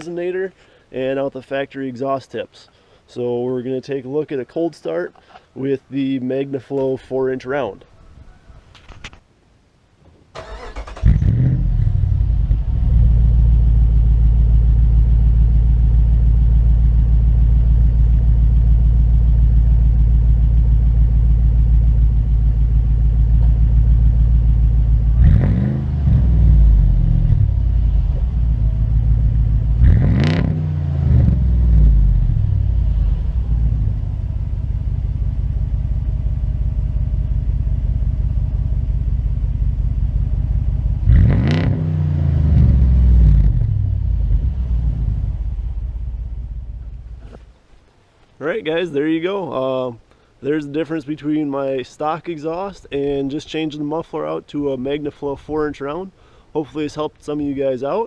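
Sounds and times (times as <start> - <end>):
engine cranking: 10.4 - 11.4
car engine idling and revving: 10.4 - 47.4.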